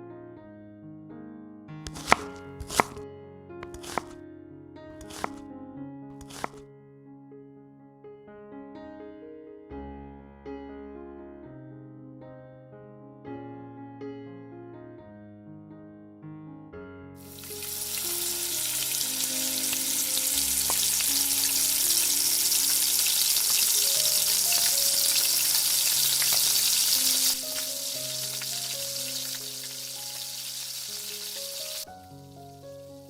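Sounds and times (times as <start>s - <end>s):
soft piano music: 0.0s - 33.0s
food sizzling in hot oil: 1.9s - 3.0s, 3.6s - 4.2s, 4.9s - 5.4s, 6.2s - 6.6s, 17.2s - 33.0s.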